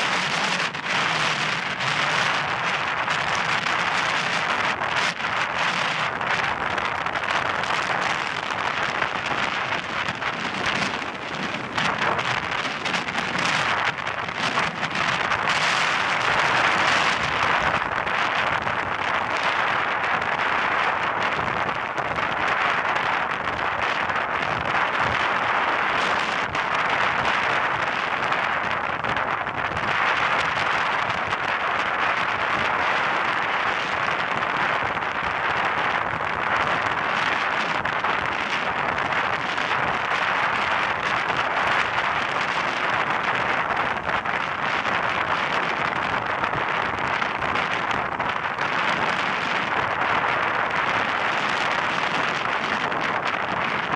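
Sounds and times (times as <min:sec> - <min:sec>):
heavy surf crashing: 0:00.0 - 0:20.8
heavy surf rushing: 0:00.0 - 0:53.9
wind buffeting microphone: 0:00.0 - 0:53.9.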